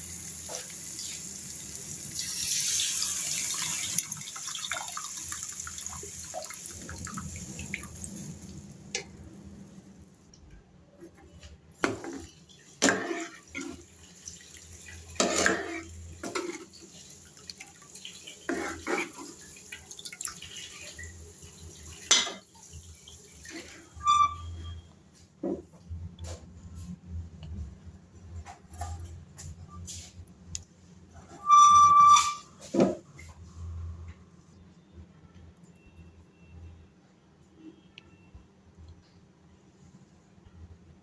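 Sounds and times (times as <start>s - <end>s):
water running from tap: 0.0s - 8.8s, 12.0s - 24.2s
pots and utensils clattering: 11.8s - 13.8s, 15.2s - 16.7s, 22.0s - 22.5s.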